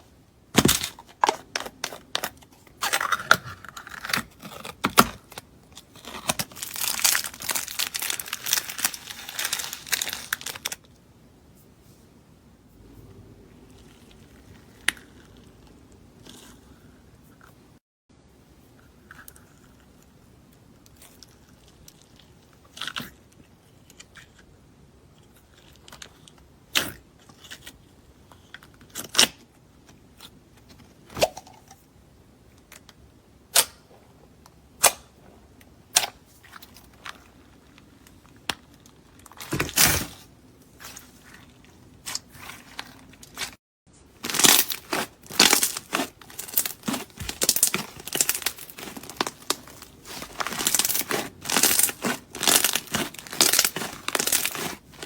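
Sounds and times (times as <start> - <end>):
slime popping and crackling: 2.8 - 10.8, 44.2 - 55.0.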